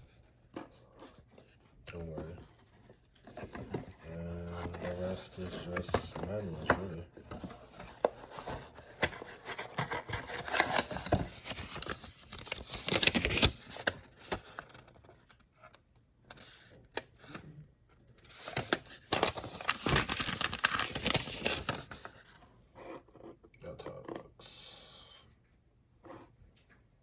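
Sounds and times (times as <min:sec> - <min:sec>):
paper packaging rustling: 0:00.1 - 0:17.4, 0:18.2 - 0:22.5.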